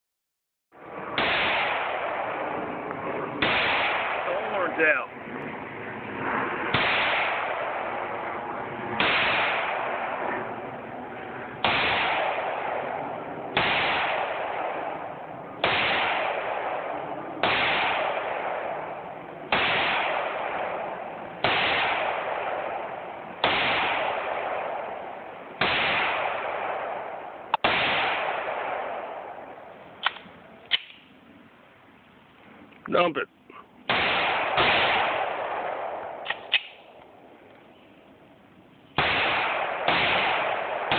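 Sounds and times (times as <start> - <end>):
pistol shots with echo: 1.1 - 2.7, 3.4 - 5.0, 6.7 - 8.3, 9.0 - 10.5, 11.6 - 31.0, 33.9 - 37.0, 39.0 - 40.9
quieter cracks: 15.6 - 31.1, 33.9 - 37.6.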